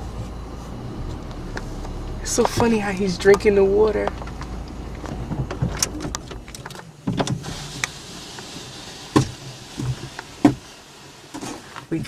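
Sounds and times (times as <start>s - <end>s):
low engine rumble: 0.0s - 12.0s
clicks and knocks in car cabin: 1.1s - 8.0s, 9.1s - 10.7s.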